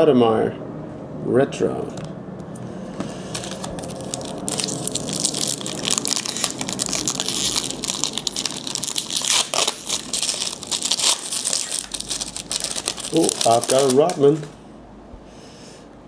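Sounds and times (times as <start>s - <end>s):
plastic wrapper crinkling and tearing: 3.2s - 14.6s.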